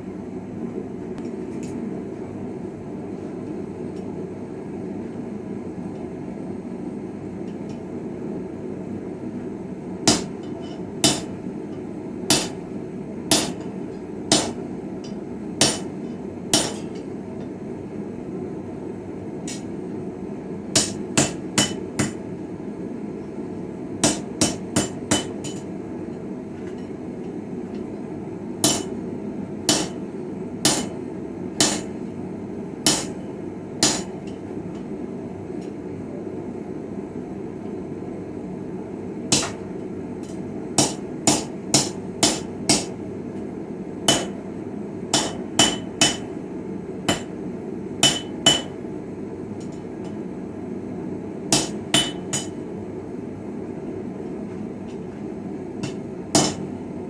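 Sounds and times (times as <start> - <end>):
hammer striking steel on anvil: 10.1 - 11.4, 12.3 - 12.6, 13.3 - 14.6, 15.6 - 16.0, 16.6 - 17.1, 20.8 - 22.2, 24.0 - 25.7, 28.6 - 29.0, 29.7 - 30.0, 30.6 - 31.0, 31.6 - 32.0, 32.9 - 33.2, 33.8 - 34.4, 39.3 - 39.7, 40.3 - 43.0, 44.1 - 44.4, 45.1 - 46.4, 47.1 - 47.4, 48.0 - 48.8, 51.6 - 52.6, 55.8 - 56.8.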